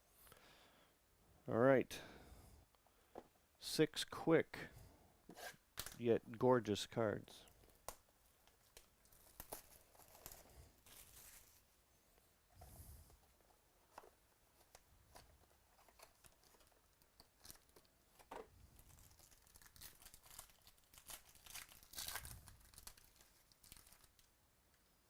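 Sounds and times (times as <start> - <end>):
wrapper crackling and ripping: 7.7 - 11.6, 15.7 - 17.9, 18.8 - 24.3.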